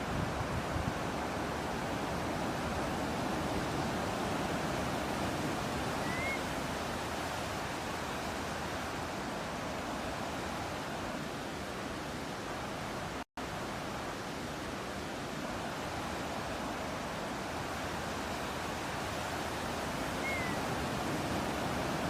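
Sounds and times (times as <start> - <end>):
ocean surf: 0.0 - 22.0
short rising bird chirp: 6.0 - 6.4, 20.2 - 20.6.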